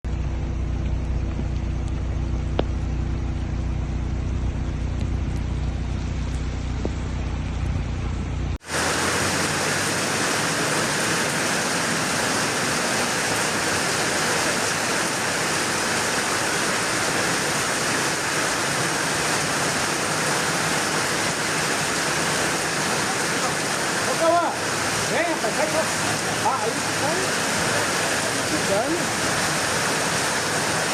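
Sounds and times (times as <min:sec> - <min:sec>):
low rumble: 0:00.0 - 0:08.6
rain hiss: 0:08.6 - 0:30.9
rushing floodwater: 0:08.6 - 0:30.9.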